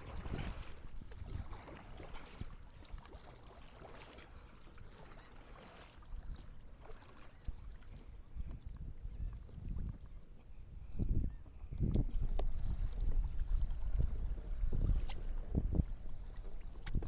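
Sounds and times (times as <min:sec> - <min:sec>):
wind rumble on microphone: 0:00.0 - 0:02.9, 0:07.4 - 0:17.0
paddle strokes splashing in water: 0:00.0 - 0:10.6, 0:11.4 - 0:17.0.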